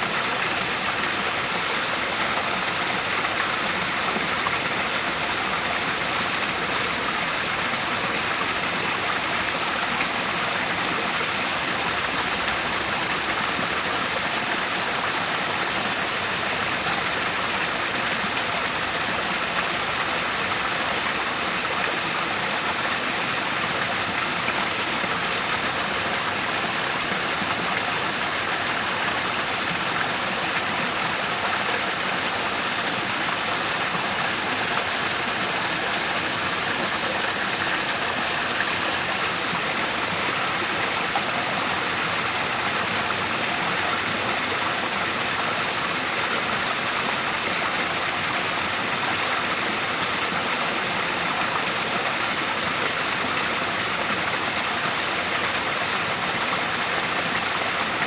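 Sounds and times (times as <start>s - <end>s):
waterfall rushing: 0.0s - 51.7s.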